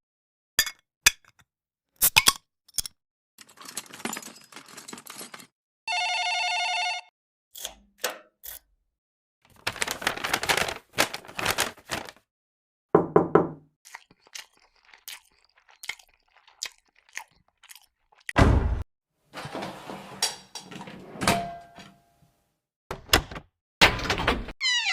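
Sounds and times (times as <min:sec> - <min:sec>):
knocks and thuds: 0:18.4 - 0:18.8.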